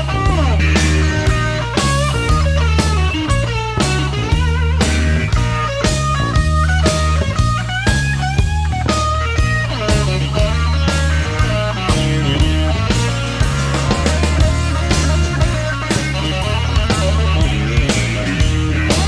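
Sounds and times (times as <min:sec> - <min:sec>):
blues-rock band playing: 0:00.0 - 0:19.0
electric guitar lead: 0:00.0 - 0:19.0.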